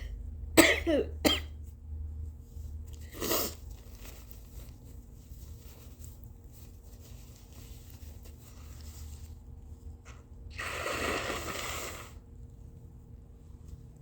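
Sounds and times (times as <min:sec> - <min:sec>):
person blowing nose: 0:03.0 - 0:03.6, 0:10.5 - 0:12.2.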